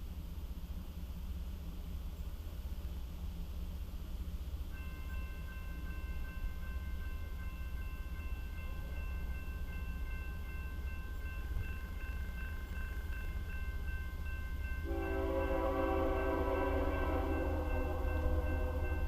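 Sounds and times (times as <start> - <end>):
diesel locomotive rumble: 0.0 - 19.0
crossing bell ringing: 4.7 - 19.0
locomotive air horn chord: 14.8 - 19.0.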